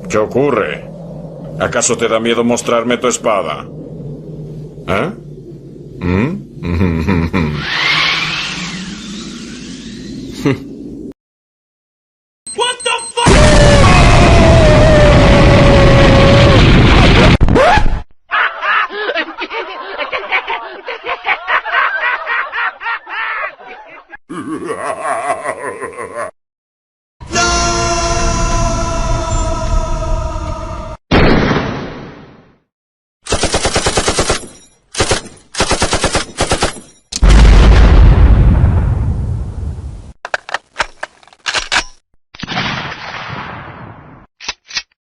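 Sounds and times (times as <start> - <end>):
high-pitched snickering laugh: 6.6 - 7.7, 18.3 - 26.3
explosion-like rumbling: 13.3 - 17.5, 37.2 - 40.0
automatic gunfire bursts: 33.3 - 36.8
deep loud blast: 37.2 - 39.9.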